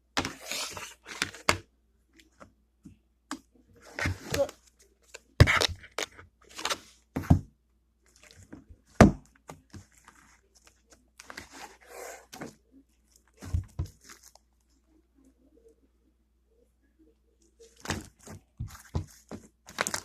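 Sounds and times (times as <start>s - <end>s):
slime squelching: 8.0s - 14.9s, 17.5s - 20.0s.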